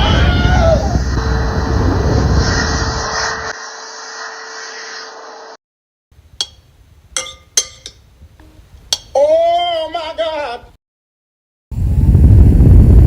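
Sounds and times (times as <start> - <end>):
rushing whirring noise: 0.7 - 5.6.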